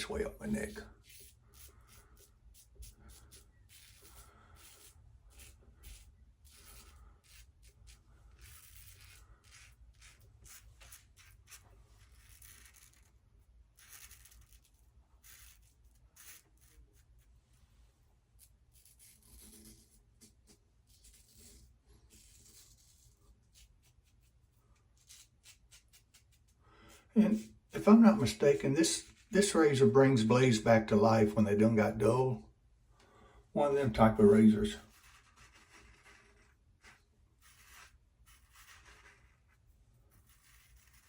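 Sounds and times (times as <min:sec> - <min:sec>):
razor scraping whiskers: 0:00.6 - 0:17.2, 0:34.8 - 0:41.0.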